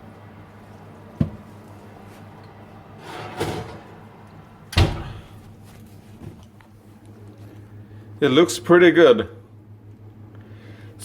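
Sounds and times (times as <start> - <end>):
oven dish scraping: 2.9 - 4.2
oven dish knocking: 3.0 - 4.0.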